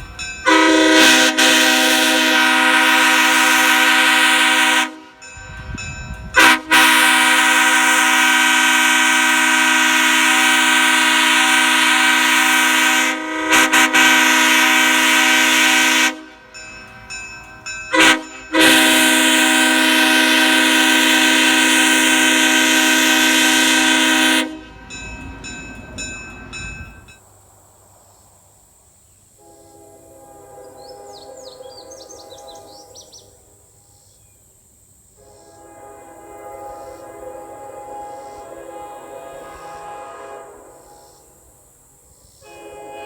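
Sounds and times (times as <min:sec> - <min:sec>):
locomotive air horn: 0:00.4 - 0:17.0, 0:17.9 - 0:25.4, 0:29.4 - 0:33.6, 0:35.2 - 0:41.4, 0:42.4 - 0:43.0
air hissing: 0:35.1 - 0:43.0.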